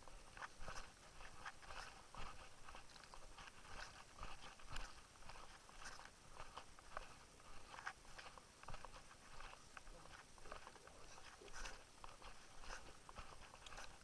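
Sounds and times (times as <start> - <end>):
footsteps crunching on a trail: 0.0 - 14.0
small clicks and rustles: 0.0 - 14.0.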